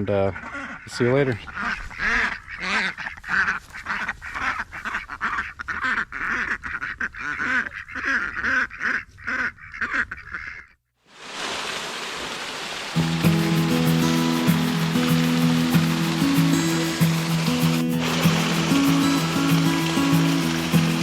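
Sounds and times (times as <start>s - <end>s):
ducks quacking: 0.0s - 10.8s, 13.0s - 21.0s
steady rushing noise: 13.0s - 21.0s.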